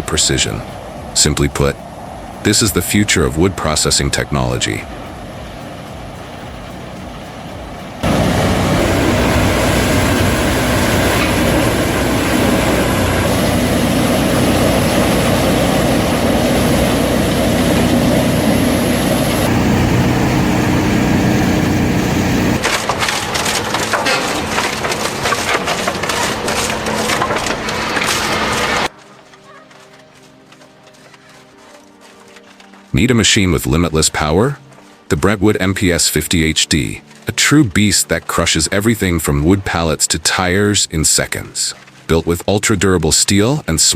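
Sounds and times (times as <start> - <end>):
engine hum: 0.0 - 42.4
wood chipper grinding wood: 8.0 - 29.5
wood cracking and splintering: 22.6 - 43.5.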